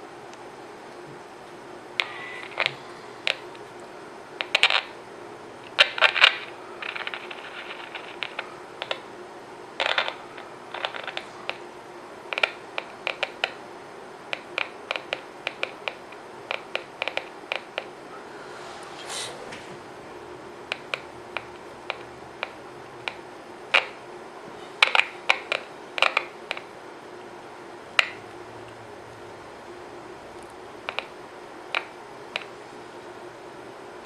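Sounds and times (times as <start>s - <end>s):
faint steady hum: 0.0s - 34.0s
radio clicks and crackles: 2.0s - 5.0s, 5.6s - 9.1s, 9.8s - 11.6s.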